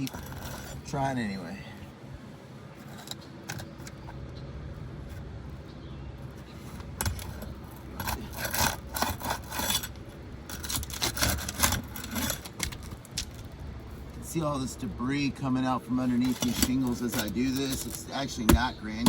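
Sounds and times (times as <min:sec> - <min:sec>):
pry bar scraping under shingles: 0:00.0 - 0:01.9, 0:02.7 - 0:04.2, 0:06.2 - 0:14.3, 0:16.0 - 0:19.0.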